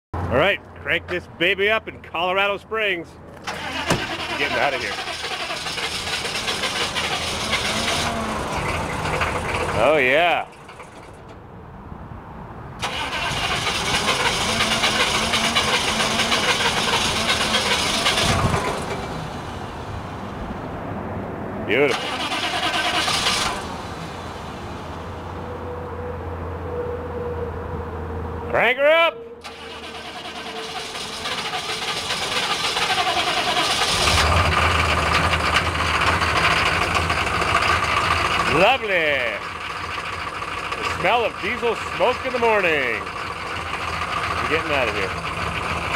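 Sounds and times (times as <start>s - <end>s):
diesel engine cranking: 3.2s - 11.5s, 12.8s - 20.4s, 21.7s - 25.8s, 29.4s - 45.9s.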